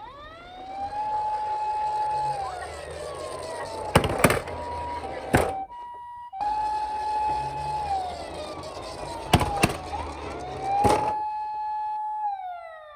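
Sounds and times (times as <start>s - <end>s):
low rolling rumble: 0.0s - 11.2s
police siren wailing: 0.0s - 12.9s
sharp clacks: 0.7s - 5.7s, 6.4s - 11.2s.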